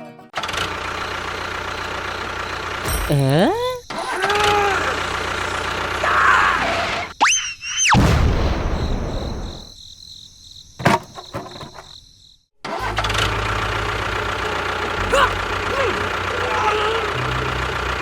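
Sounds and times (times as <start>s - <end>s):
small engine low rumble: 0.4s - 7.1s, 12.7s - 18.0s.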